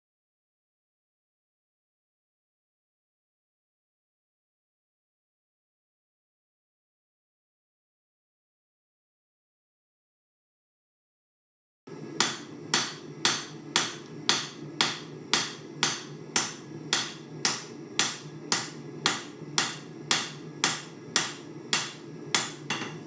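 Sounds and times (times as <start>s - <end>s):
hammer striking steel on anvil: 12.2s - 23.0s.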